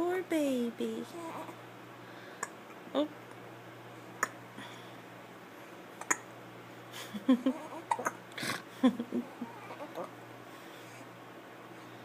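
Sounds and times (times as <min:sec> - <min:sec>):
baby hiccuping: 0:06.0 - 0:06.3, 0:07.7 - 0:08.2.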